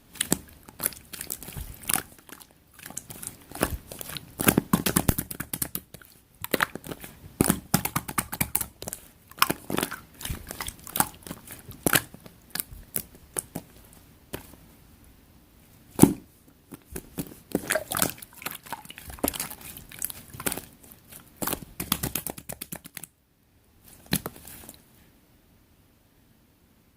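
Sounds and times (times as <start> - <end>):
slime squeezed by hand: 17.0 - 22.2.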